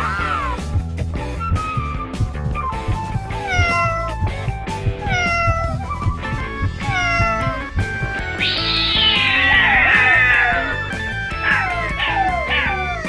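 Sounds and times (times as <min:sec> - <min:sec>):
backing music with steady beat: 0:00.0 - 0:13.0
harsh cat cry: 0:03.4 - 0:04.2, 0:05.0 - 0:05.9, 0:06.6 - 0:13.0
cat meowing: 0:03.4 - 0:04.3, 0:04.9 - 0:13.0.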